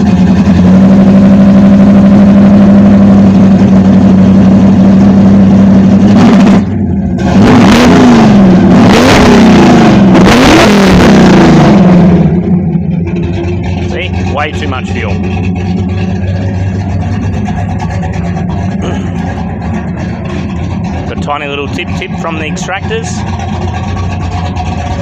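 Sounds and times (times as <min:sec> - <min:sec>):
car engine running and revving: 0:00.0 - 0:25.0
man talking: 0:13.9 - 0:15.2, 0:21.0 - 0:23.2.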